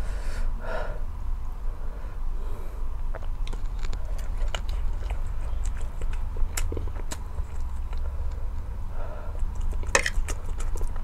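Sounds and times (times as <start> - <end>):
steady low hum: 0.0 - 11.0
wet mouth clicks and smacks: 3.1 - 8.4, 9.4 - 11.0
chewing food: 3.1 - 11.0.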